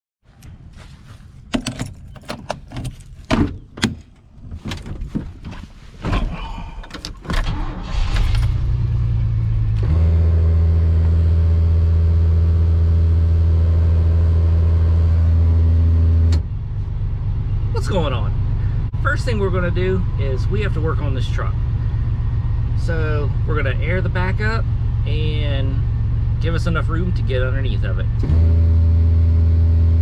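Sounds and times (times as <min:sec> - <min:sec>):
jangling handling noises: 0:01.5 - 0:05.1.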